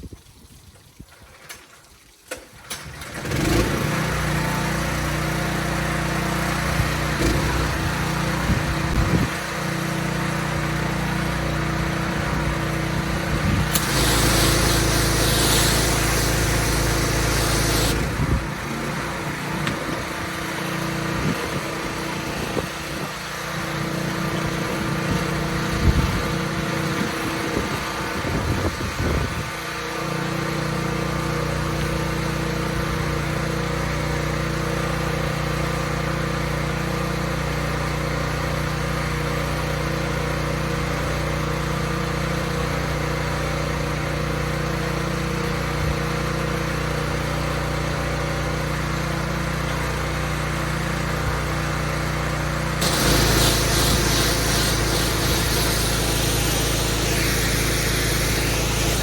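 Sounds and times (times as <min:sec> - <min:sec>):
small engine running: 0:02.6 - 0:59.0
loud hiss: 0:13.6 - 0:18.1, 0:52.8 - 0:59.0.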